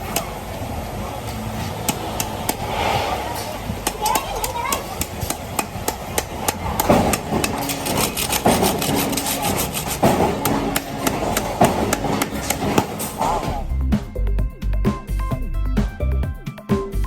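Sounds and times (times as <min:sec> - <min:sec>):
ice cutting machine scraping: 0:00.0 - 0:13.7.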